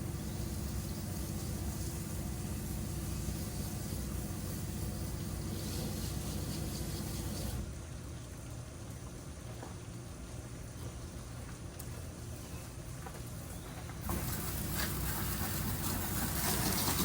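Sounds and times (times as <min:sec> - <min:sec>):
pressure washer engine running: 0:00.0 - 0:07.6, 0:14.0 - 0:17.0
water spray hissing: 0:00.0 - 0:07.6, 0:14.0 - 0:17.0.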